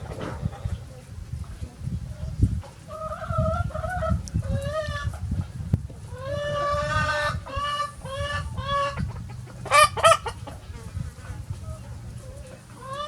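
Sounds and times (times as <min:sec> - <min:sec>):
chicken squawks: 0:06.2 - 0:10.5.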